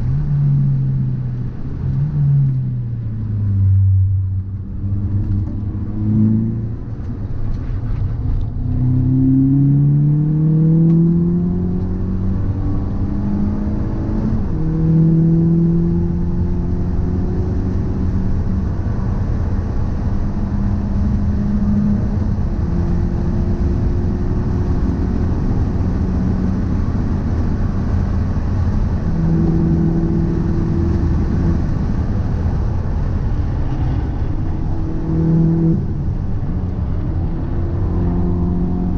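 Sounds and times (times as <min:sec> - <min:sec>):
heavy low rumble: 0:00.0 - 0:10.9, 0:22.0 - 0:38.9
car engine accelerating: 0:00.0 - 0:38.9.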